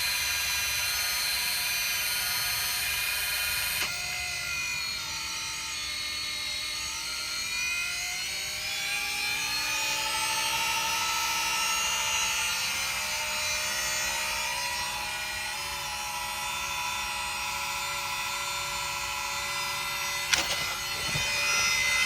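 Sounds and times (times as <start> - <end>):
electric motor whining: 0.0 - 22.0
click: 20.3 - 21.2.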